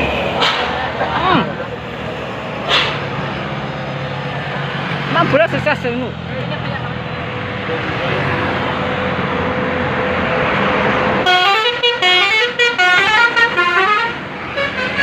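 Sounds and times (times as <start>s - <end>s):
musical air horn tune: 11.2s - 15.0s.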